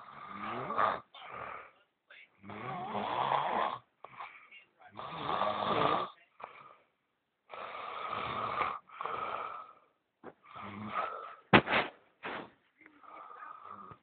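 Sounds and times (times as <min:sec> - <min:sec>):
man snoring: 0:00.0 - 0:01.7, 0:02.4 - 0:04.3, 0:04.9 - 0:06.7, 0:07.5 - 0:11.4, 0:13.0 - 0:14.0.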